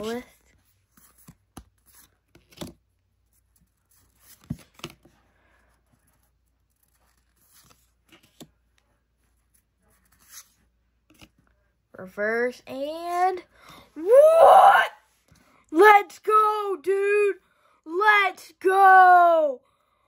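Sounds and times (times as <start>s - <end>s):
cards being flipped through: 0.0s - 5.2s, 6.2s - 8.8s, 10.0s - 11.5s.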